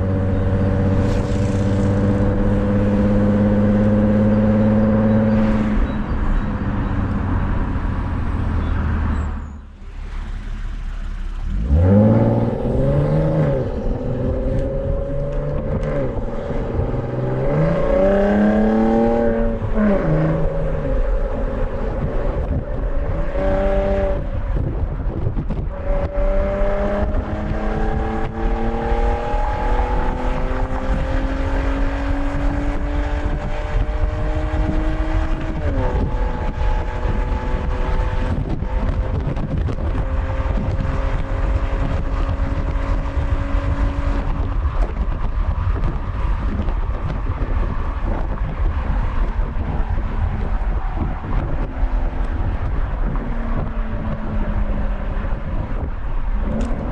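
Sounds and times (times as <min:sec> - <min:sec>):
car engine accelerating: 0:00.0 - 0:56.9
wind and road noise: 0:00.0 - 0:56.9.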